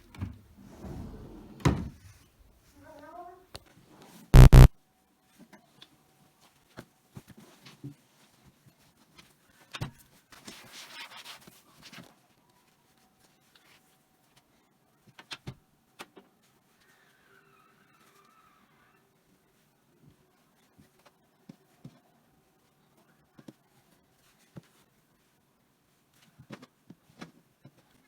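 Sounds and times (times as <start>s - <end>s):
rustle of handled fabric: 6.2s - 14.6s.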